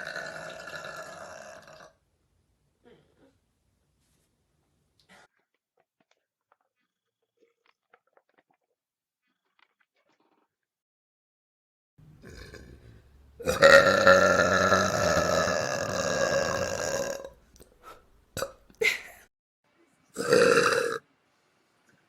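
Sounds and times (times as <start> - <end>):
person burping: 0.0 - 2.0, 12.2 - 17.4, 18.4 - 19.2, 20.2 - 21.0.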